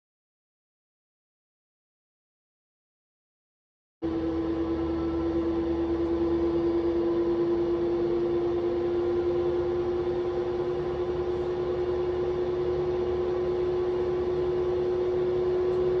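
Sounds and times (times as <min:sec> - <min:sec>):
washing machine motor hum: 0:04.0 - 0:16.0.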